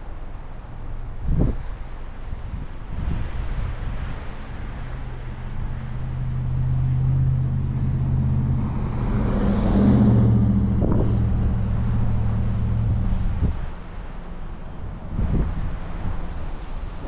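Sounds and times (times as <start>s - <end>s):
low engine hum: 0.0s - 17.0s
strong wind rushing: 7.3s - 14.0s.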